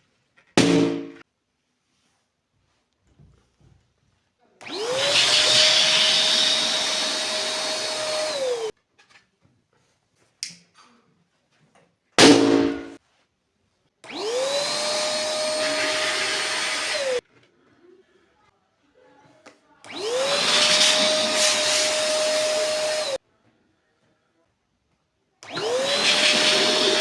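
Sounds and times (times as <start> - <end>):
loud sharp bang: 12.2 - 13.0.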